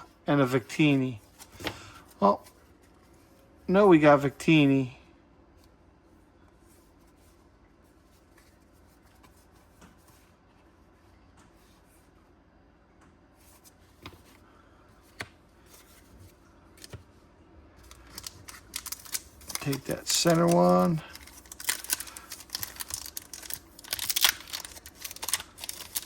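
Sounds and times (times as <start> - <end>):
trading cards and wrappers rustling: 17.8 - 26.0.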